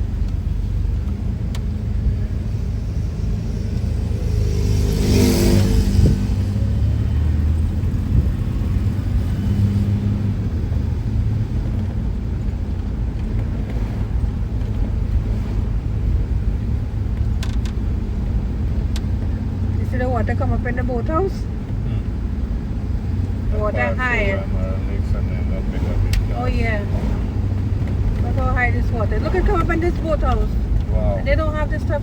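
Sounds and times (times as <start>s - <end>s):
car road and engine rumble: 0.0s - 32.0s
loud rush: 25.1s - 29.5s.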